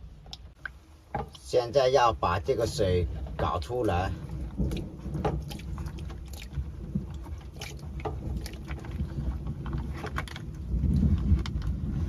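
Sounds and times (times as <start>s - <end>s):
steady low rumble: 0.0s - 12.0s
water sloshing and splashing: 2.6s - 12.0s.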